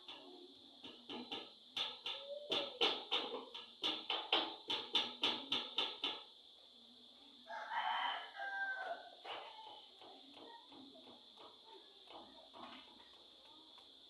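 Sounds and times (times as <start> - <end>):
rooster crowing: 7.5 - 9.2.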